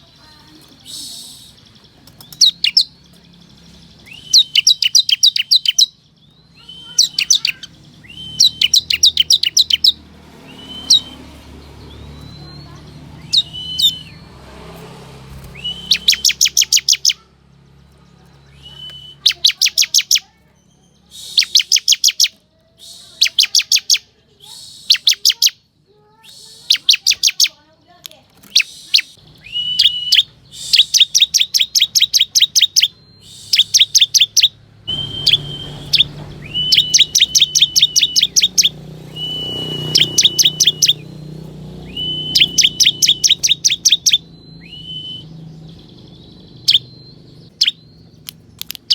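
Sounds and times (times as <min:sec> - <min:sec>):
bird high rapid chirps: 0:00.0 - 0:48.9
bird whistled note: 0:04.0 - 0:05.8, 0:10.5 - 0:11.2, 0:21.0 - 0:22.2, 0:28.6 - 0:41.0, 0:41.9 - 0:45.3.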